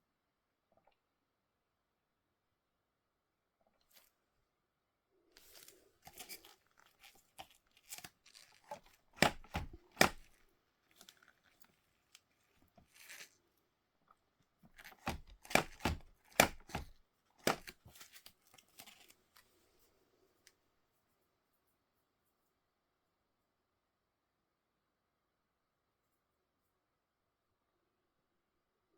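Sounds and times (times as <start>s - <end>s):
packaging tearing and crinkling: 5.4s - 13.4s, 14.8s - 19.5s
sharp snaps: 15.0s - 17.8s.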